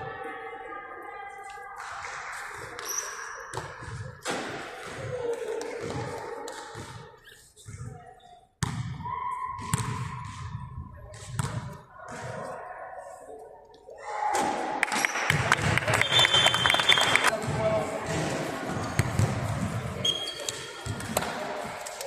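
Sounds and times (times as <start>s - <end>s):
faint voices: 0.0s - 22.0s.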